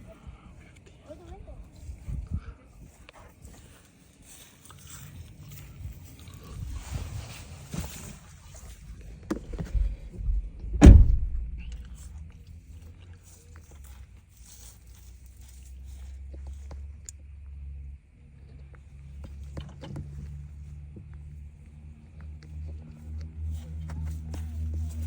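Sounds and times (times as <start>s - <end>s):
low steady hum: 8.6s - 16.0s
heavy thunk: 9.3s - 11.9s.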